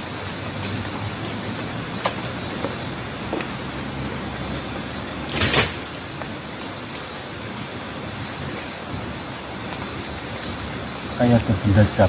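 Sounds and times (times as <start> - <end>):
high insect drone: 0.0 - 12.0
rustling crash: 5.3 - 6.0.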